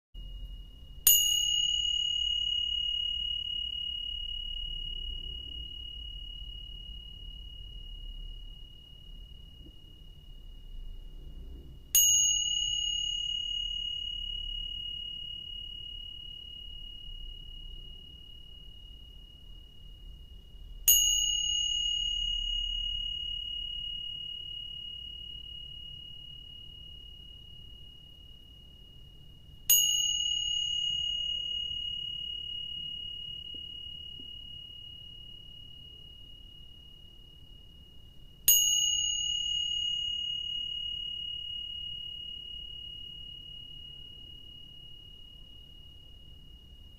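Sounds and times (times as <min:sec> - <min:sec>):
tingsha cymbals ringing: 0:00.2 - 0:19.3, 0:20.8 - 0:28.0, 0:29.7 - 0:36.8, 0:38.5 - 0:45.3
tingsha bells ringing: 0:01.1 - 0:06.7, 0:12.0 - 0:16.8, 0:20.9 - 0:24.4, 0:29.7 - 0:33.6.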